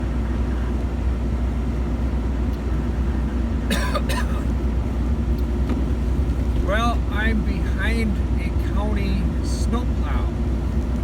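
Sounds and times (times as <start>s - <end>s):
car rumble from inside cabin: 0.0s - 11.0s
person coughing: 3.7s - 4.5s.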